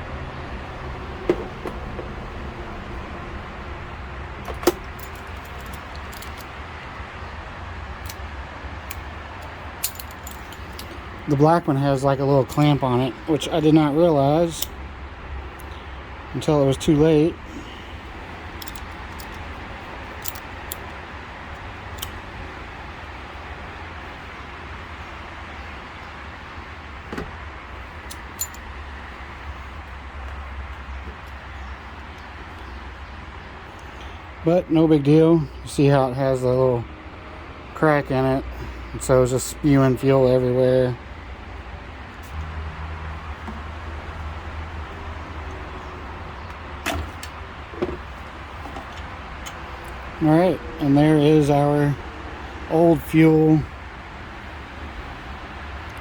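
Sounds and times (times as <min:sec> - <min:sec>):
low rumble and hiss: 0:00.0 - 0:42.5, 0:43.1 - 0:56.0
clicks and knocks of parts handled: 0:01.2 - 0:02.1, 0:04.4 - 0:06.6, 0:08.0 - 0:11.2, 0:18.4 - 0:22.3, 0:28.0 - 0:28.7, 0:46.4 - 0:50.1
small parts clicking: 0:18.6 - 0:20.9.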